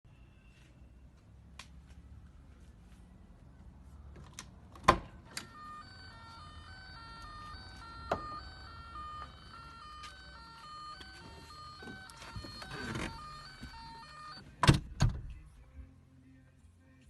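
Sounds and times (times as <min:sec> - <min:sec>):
electronic beeping melody: 0:05.4 - 0:14.4.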